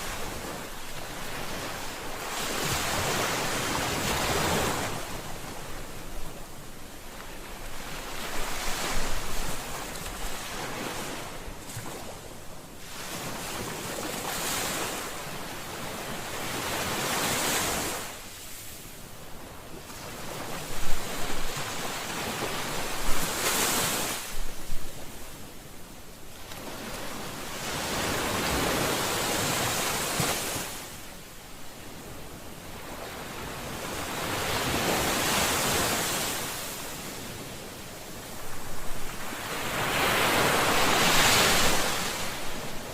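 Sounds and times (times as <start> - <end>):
ocean waves breaking: 38.2 - 42.9.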